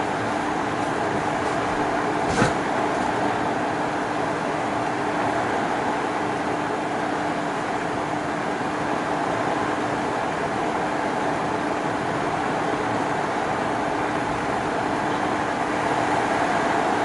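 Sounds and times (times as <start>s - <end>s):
outdoor rushing noise: 1.4s - 3.2s.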